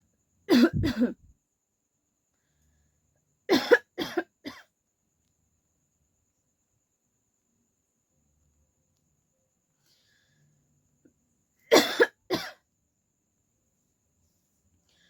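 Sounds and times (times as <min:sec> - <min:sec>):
woman coughing: 0:00.5 - 0:01.2, 0:03.5 - 0:04.6, 0:11.7 - 0:12.6.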